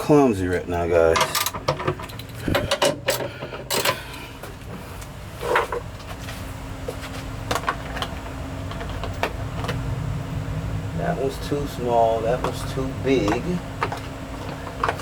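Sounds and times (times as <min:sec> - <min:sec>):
faint steady hum: 0:00.0 - 0:15.0
hand tools clicking and clinking: 0:01.1 - 0:04.2, 0:12.4 - 0:15.0.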